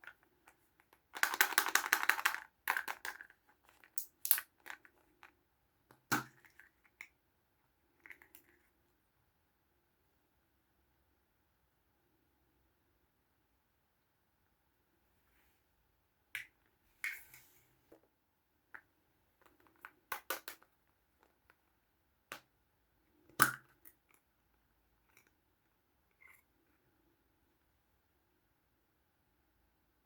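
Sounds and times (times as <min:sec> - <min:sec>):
plastic toys clicking and tapping: 0:00.0 - 0:05.4, 0:19.4 - 0:21.4.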